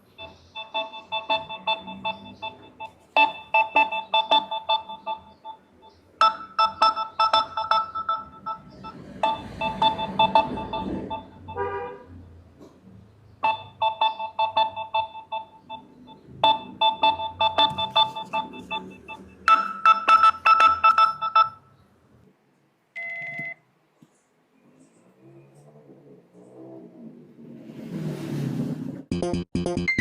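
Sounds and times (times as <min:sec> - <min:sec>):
higher-pitched beeping pattern: 0:00.0 - 0:11.6, 0:13.4 - 0:21.6
rapid electronic phone beeping: 0:00.0 - 0:11.6, 0:13.4 - 0:21.7
short beep: 0:07.3 - 0:11.7.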